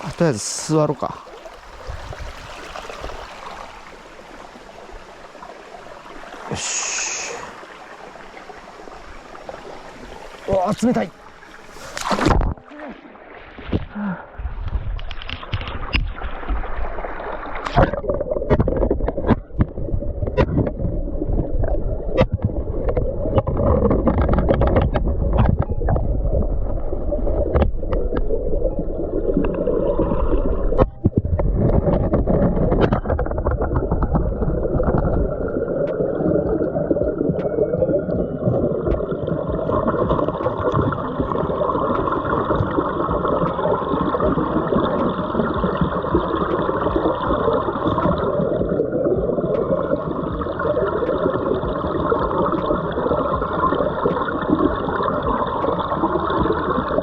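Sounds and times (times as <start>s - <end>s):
river water gurgling and splashing: 0.0s - 57.0s.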